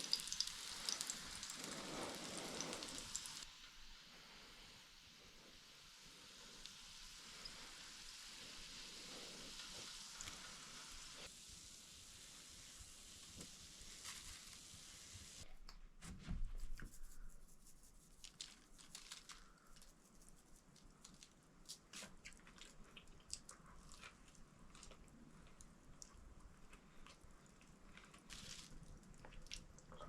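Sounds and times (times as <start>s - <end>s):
food sizzling in a pan: 0.0s - 15.4s
food tearing and crackling: 18.2s - 20.0s, 20.8s - 30.0s.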